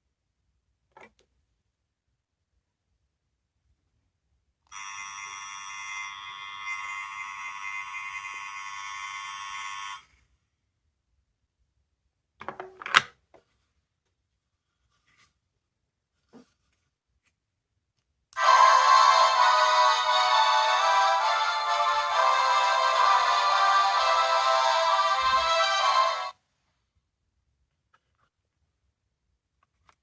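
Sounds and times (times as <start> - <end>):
toy electronic buzzing tone: 4.7 - 10.1.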